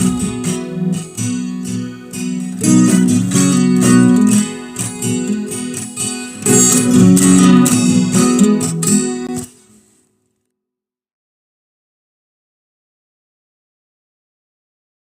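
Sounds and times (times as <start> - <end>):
strummed acoustic guitar: 0.0 - 10.0.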